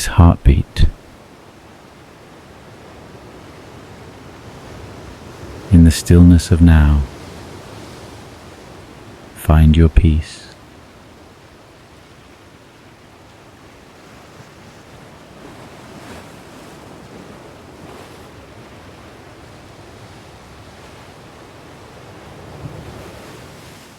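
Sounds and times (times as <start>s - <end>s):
ocean waves breaking: 0.8s - 5.8s, 13.4s - 23.9s.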